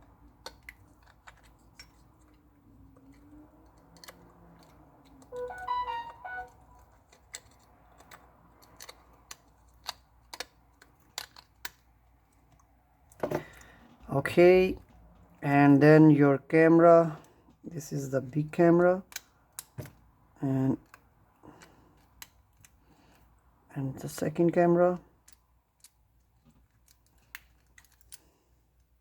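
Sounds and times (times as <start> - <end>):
brief pitched tone: 5.3 - 6.8.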